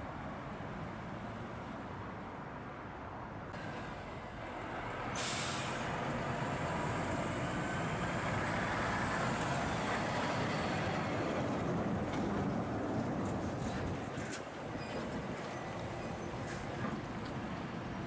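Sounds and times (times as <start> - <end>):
air brakes hissing: 5.1 - 6.0.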